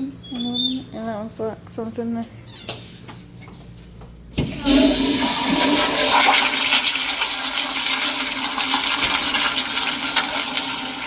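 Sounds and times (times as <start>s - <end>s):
toilet flushing: 4.4s - 11.0s.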